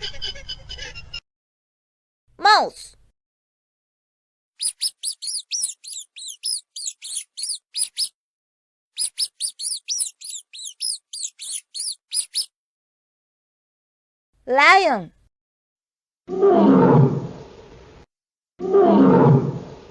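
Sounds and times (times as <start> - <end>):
mouse squeaking: 4.6 - 8.2, 9.0 - 12.5.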